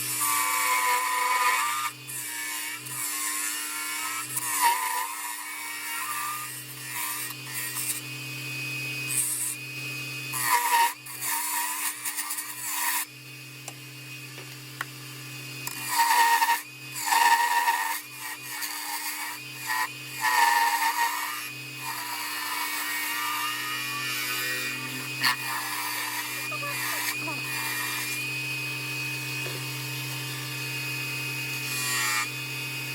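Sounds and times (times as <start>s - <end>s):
wood lathe running: 0.0s - 8.1s, 9.1s - 9.6s, 10.3s - 14.9s, 15.6s - 32.9s
tool scraping spinning wood: 15.6s - 23.6s, 24.2s - 28.2s.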